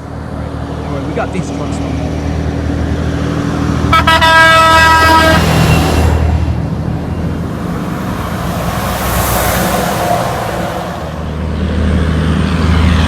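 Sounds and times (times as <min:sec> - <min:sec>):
heavy trucks rumbling past: 0:00.0 - 0:13.0
truck air horn blast: 0:03.9 - 0:05.7.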